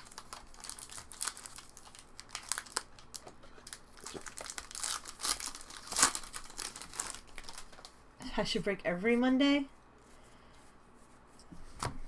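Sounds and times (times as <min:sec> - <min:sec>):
foil wrappers crinkling: 0:00.0 - 0:08.0.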